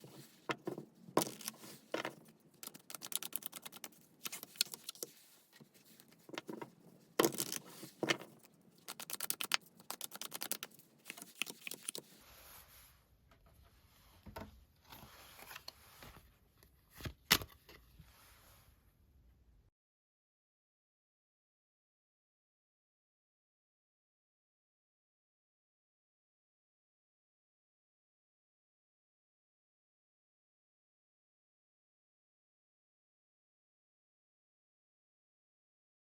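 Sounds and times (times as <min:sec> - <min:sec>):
cards shuffling: 0:00.0 - 0:12.2.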